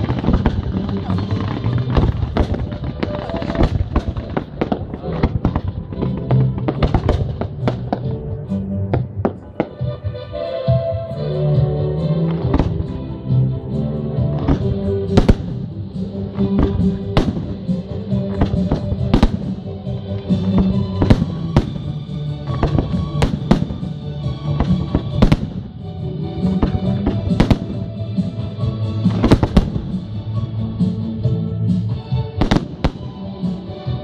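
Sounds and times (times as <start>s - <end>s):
fireworks bangs: 0.0s - 8.2s, 14.3s - 30.4s, 32.4s - 33.4s
music: 0.0s - 34.0s.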